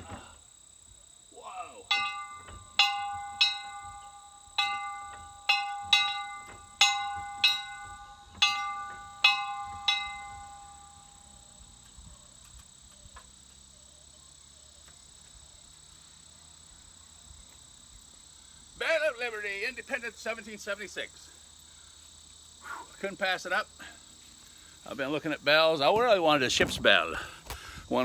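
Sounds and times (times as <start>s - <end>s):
faint insect chirping: 0.0s - 28.0s
small bell being struck: 1.9s - 11.6s.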